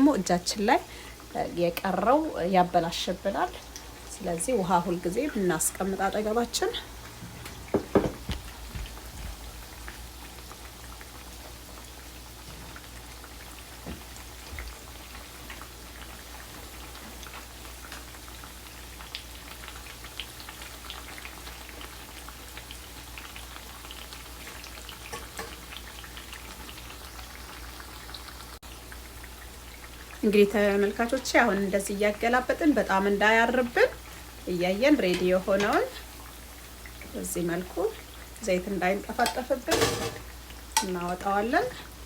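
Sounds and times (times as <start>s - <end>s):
fritters sizzling in hot oil: 0.0s - 42.0s
soft knocks: 7.7s - 8.9s.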